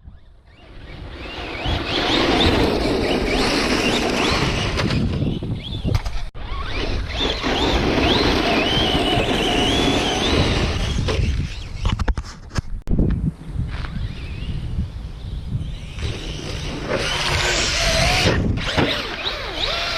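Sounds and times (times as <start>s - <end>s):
toy truck electric motor whining: 0.6s - 5.8s, 6.4s - 11.8s, 15.7s - 19.9s.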